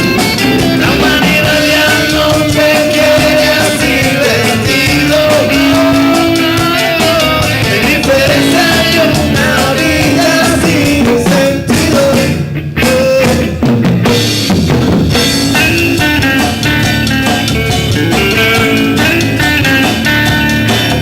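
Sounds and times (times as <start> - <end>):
drum kit: 0.0 - 21.0
live rock band playing: 0.0 - 21.0.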